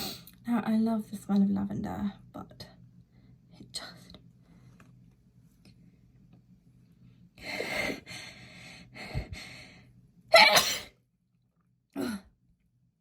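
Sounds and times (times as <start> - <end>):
woman sneezing: 10.3 - 10.9.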